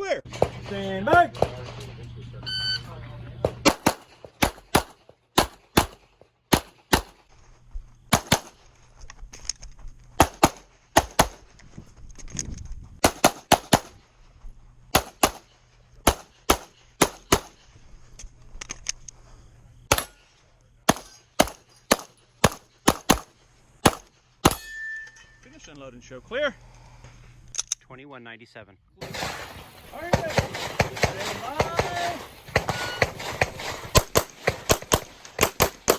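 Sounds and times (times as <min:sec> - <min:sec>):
pistol shots: 0:03.4 - 0:07.3, 0:08.1 - 0:08.6, 0:10.2 - 0:11.4, 0:13.0 - 0:14.0, 0:14.9 - 0:17.6, 0:19.9 - 0:20.3, 0:20.9 - 0:24.7, 0:29.0 - 0:35.9.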